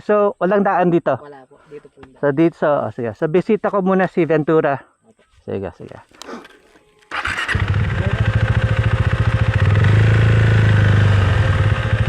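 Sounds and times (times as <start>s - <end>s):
motorcycle engine running: 7.1s - 12.0s.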